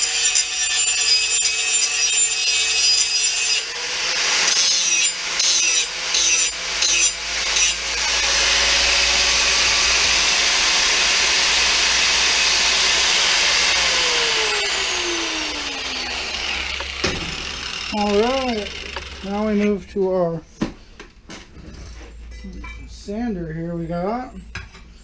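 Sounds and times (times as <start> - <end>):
power tool cutting steel: 0.0 - 19.8
motor winding down whine: 7.8 - 19.5.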